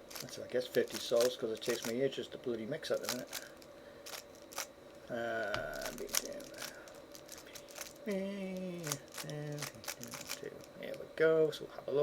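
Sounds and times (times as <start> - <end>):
man murmuring: 8.0 - 10.5.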